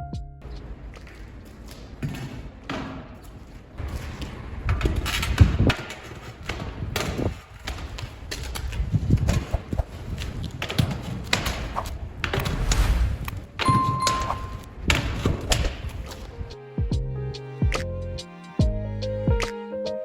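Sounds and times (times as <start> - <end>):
scraping: 0.4 - 16.6
knocks and thuds: 4.7 - 9.8, 10.6 - 16.1.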